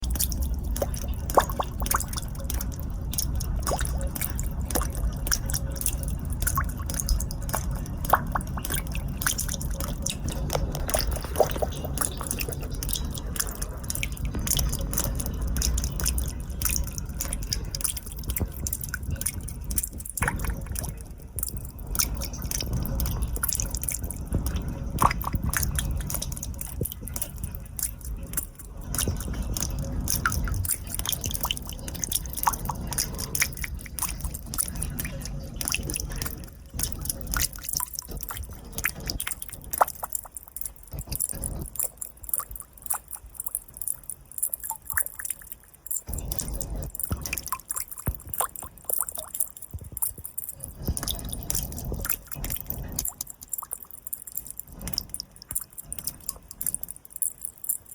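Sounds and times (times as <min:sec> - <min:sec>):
low rumbling background: 0:00.0 - 0:40.0
water dripping into water: 0:00.0 - 0:57.9.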